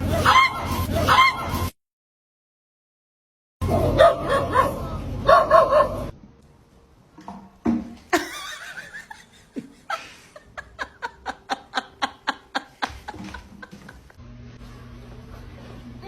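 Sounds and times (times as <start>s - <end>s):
person laughing: 8.2s - 14.2s.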